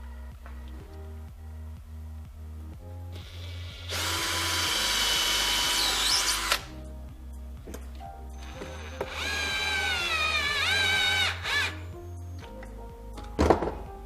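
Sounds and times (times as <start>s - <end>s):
background music with beat: 0.0s - 14.0s
power drill running: 3.4s - 6.7s, 8.4s - 11.8s
drill click: 8.4s - 11.8s.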